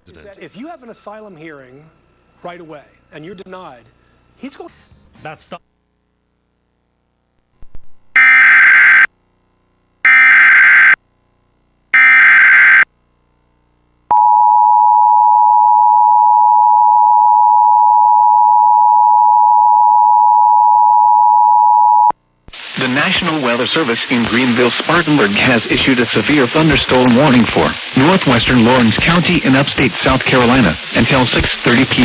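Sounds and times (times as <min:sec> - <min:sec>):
digital data bursts: 0:22.8 - 0:32.0.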